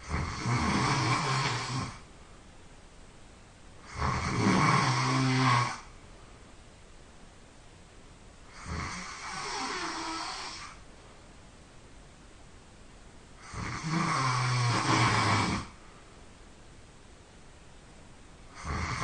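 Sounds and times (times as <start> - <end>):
person snoring: 0.0 - 2.0, 3.8 - 5.9, 8.5 - 10.8, 13.4 - 15.8, 18.5 - 19.0.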